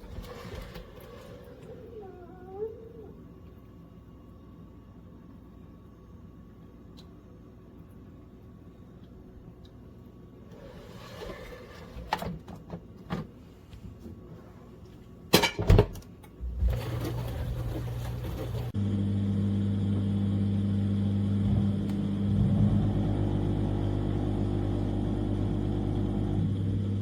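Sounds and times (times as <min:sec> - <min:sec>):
dishwasher pump motor humming: 0:00.0 - 0:03.1, 0:15.7 - 0:27.0.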